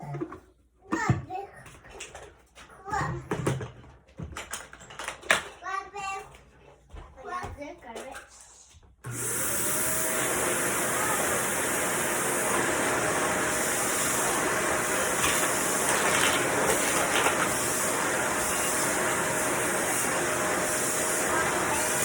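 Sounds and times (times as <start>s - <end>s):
vacuum cleaner motor running: 9.0s - 22.0s.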